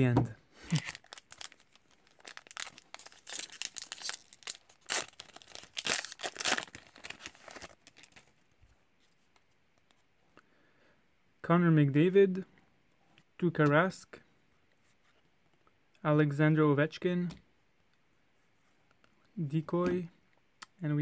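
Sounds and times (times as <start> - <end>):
wrapper tearing and crinkling: 0.7 - 8.3.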